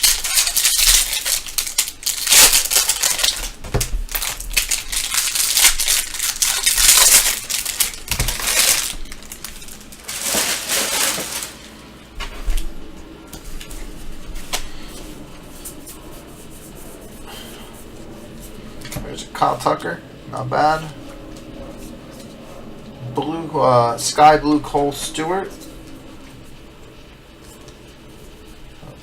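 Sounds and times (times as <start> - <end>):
cards rustling: 0.0 - 11.8
foil wrappers crinkling and tearing: 0.0 - 11.9.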